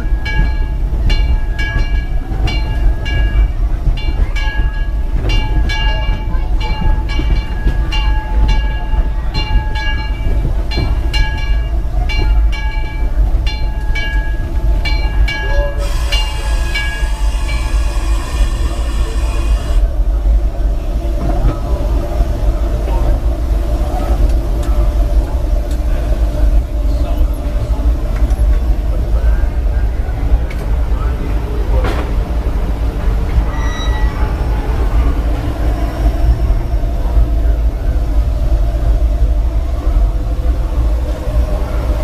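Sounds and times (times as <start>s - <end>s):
steam locomotive bell ringing: 0.0s - 19.8s, 33.4s - 38.4s
locomotive rumble: 0.0s - 42.0s
loud steam hiss: 15.7s - 20.0s.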